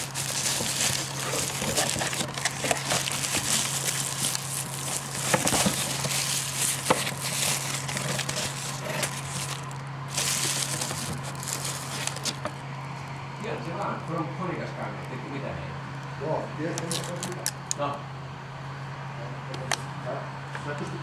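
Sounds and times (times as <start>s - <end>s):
packaging rustling and crinkling: 0.0s - 12.6s
steady low hum: 0.0s - 21.0s.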